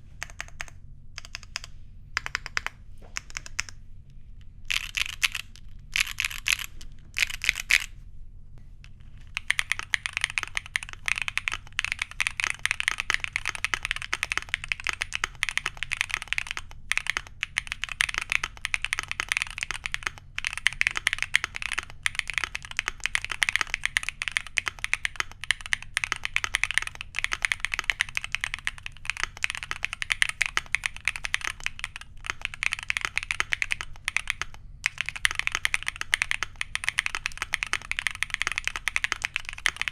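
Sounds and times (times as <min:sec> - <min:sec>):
mechanical keyboard typing: 0:00.2 - 0:03.8, 0:04.7 - 0:07.9, 0:09.2 - 0:39.9.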